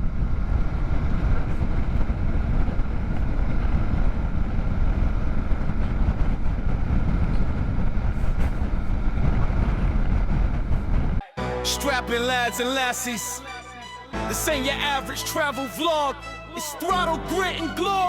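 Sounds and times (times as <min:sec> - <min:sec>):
road rumble: 0:00.0 - 0:11.2
wind noise: 0:00.0 - 0:11.2.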